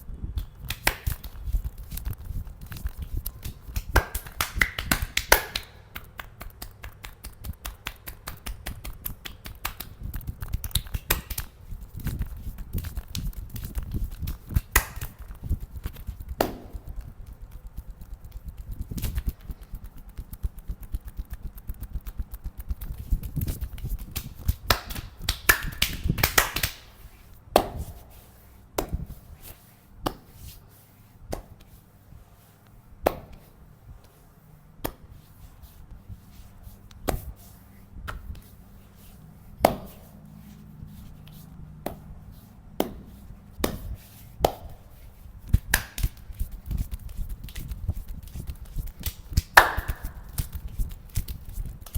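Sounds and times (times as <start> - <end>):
sharp slaps on skin: 0.6 - 2.1, 2.7 - 15.3, 15.9 - 17.0, 22.8 - 26.9, 30.0 - 30.3, 33.0 - 33.5, 39.6 - 40.0, 42.8 - 44.8, 45.6 - 51.9
hands tapping and chopping body: 16.3 - 16.9, 33.0 - 33.4, 39.6 - 40.0, 42.8 - 44.8.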